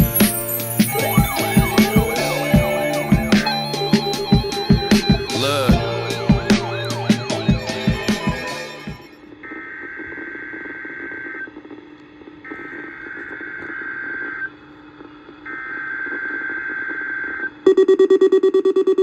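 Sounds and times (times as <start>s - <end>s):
raspy data screech: 0.0s - 9.2s.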